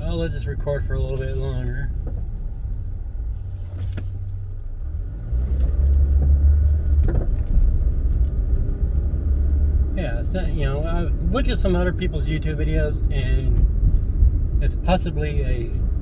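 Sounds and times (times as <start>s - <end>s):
car interior road rumble: 0.0s - 16.0s.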